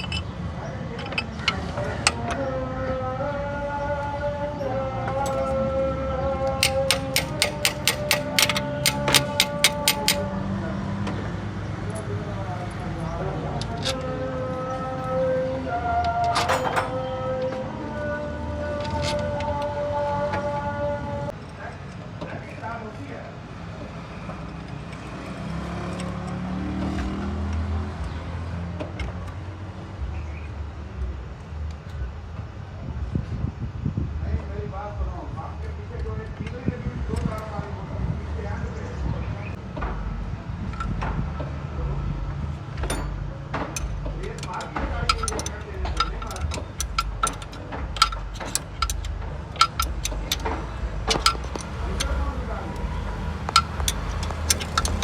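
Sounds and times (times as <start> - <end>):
sharp metallic clicks: 0.0 - 2.4, 5.1 - 5.6, 6.2 - 10.4, 18.8 - 19.6, 42.8 - 55.0
car engine idling: 4.9 - 17.3, 39.6 - 55.0
car engine revving and running: 23.9 - 32.6, 39.6 - 44.2, 44.8 - 55.0.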